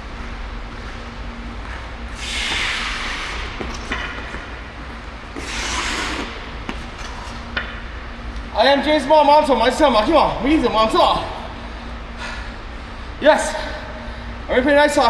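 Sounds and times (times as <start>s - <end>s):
ice skate blades scraping: 5.4s - 7.5s.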